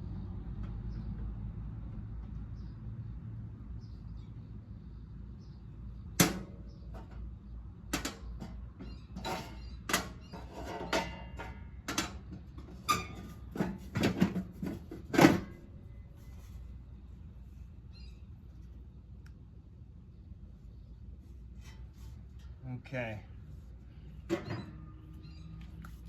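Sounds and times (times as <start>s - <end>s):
parts knocking and clattering: 6.2s - 15.8s, 24.2s - 25.0s.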